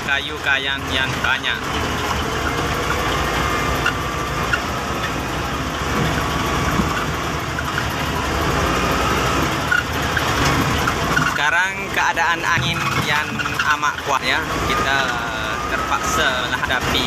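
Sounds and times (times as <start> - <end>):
heavy diesel engine running: 0.0 - 17.0.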